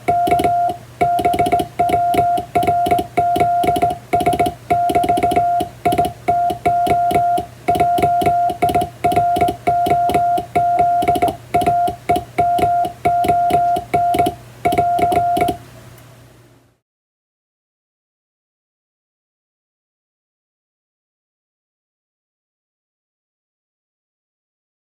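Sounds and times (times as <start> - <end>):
morse code beeps: 0.0 - 15.6
telegraph key clicks: 0.0 - 15.6.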